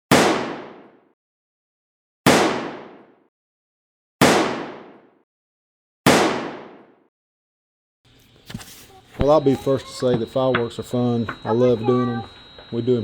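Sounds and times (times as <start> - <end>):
explosive bangs: 2.3 - 3.0.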